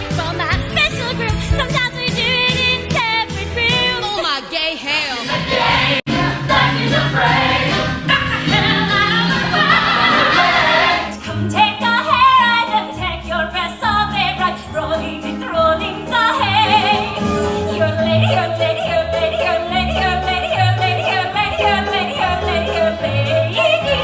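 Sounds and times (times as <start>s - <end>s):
instrumental accompaniment: 5.2s - 13.0s.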